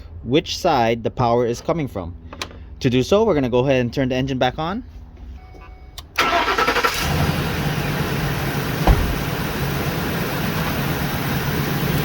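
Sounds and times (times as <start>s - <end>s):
car starter cranking: 6.0s - 9.8s
car engine idling: 6.1s - 12.0s
short thump: 8.8s - 9.4s.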